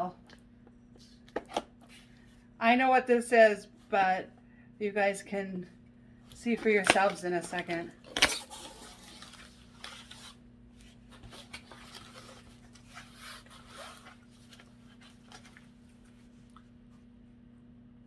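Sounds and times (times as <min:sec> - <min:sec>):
steady low hum: 0:00.0 - 0:18.0
packaging rustling: 0:06.6 - 0:16.3.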